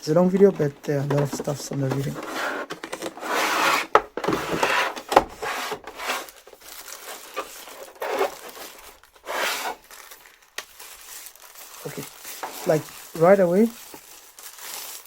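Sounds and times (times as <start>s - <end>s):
packaging rustling and crinkling: 0.0s - 15.0s.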